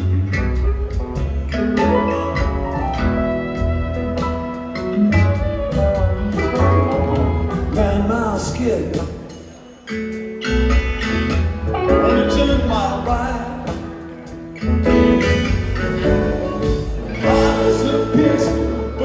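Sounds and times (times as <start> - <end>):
rock band playing: 0.0 - 19.0
person singing: 17.2 - 19.0.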